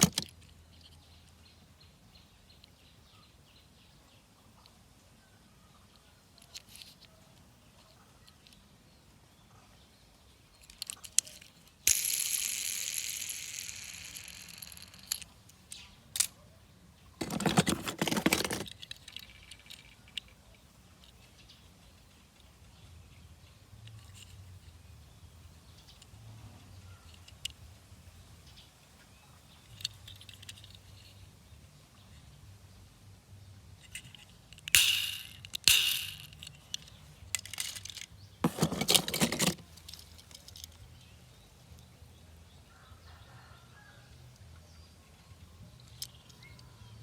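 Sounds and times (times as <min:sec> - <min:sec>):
small clicks and rattles: 0:05.9 - 0:08.7, 0:10.6 - 0:16.4, 0:17.2 - 0:22.6, 0:23.8 - 0:24.7, 0:29.6 - 0:31.3, 0:33.8 - 0:41.1, 0:45.7 - 0:46.8.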